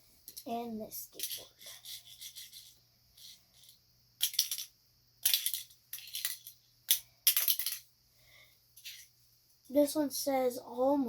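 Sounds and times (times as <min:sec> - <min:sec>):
toy skateboards clattering: 0:00.4 - 0:07.9.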